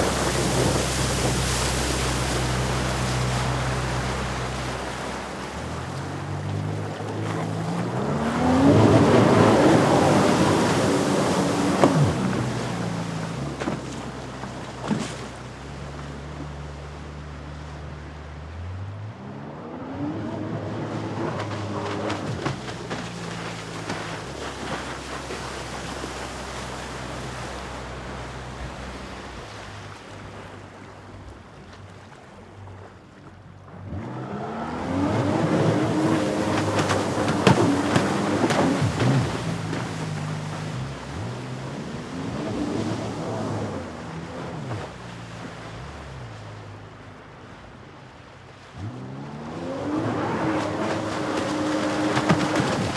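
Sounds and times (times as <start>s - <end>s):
jet ski engine: 0.0s - 52.9s
water noise: 0.0s - 52.9s.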